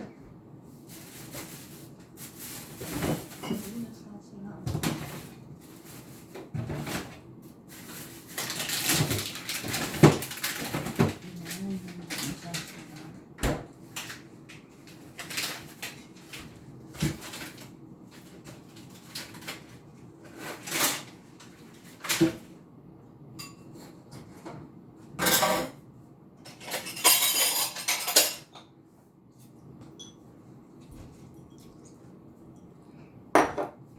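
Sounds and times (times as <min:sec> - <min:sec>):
utensils clinking on a dish: 0:02.8 - 0:03.9, 0:23.4 - 0:24.4, 0:25.2 - 0:25.8, 0:26.4 - 0:28.8, 0:29.9 - 0:30.2.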